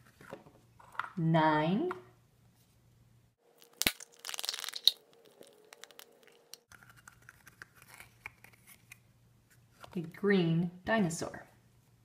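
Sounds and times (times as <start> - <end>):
crinkly crackle: 3.6 - 8.8.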